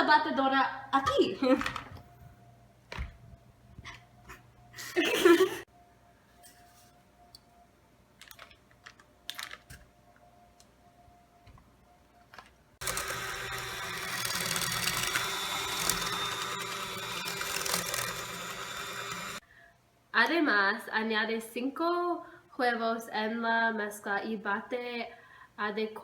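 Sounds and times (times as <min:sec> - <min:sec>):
electric mixer running: 0:12.8 - 0:19.4.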